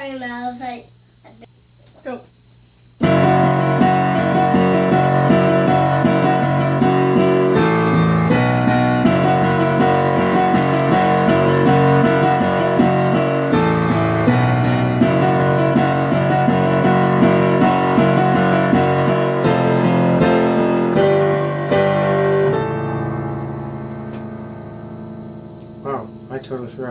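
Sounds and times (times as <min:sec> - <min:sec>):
keyboard playing piano chords: 0:03.0 - 0:26.9.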